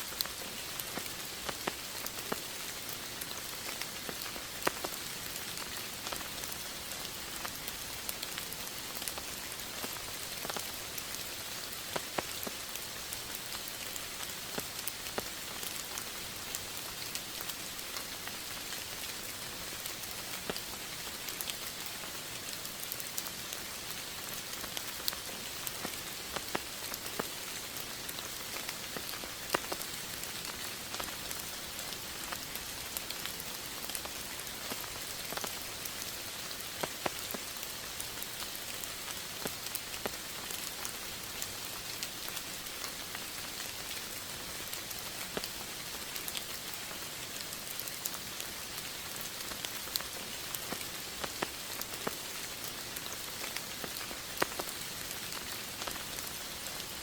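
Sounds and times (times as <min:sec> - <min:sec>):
steady rain falling: 0:00.0 - 0:57.0.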